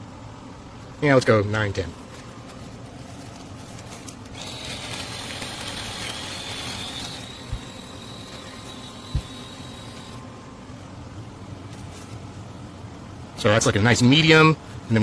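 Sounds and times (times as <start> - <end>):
beans grinding: 3.4 - 10.2
coffee grinder motor whine: 4.3 - 10.2.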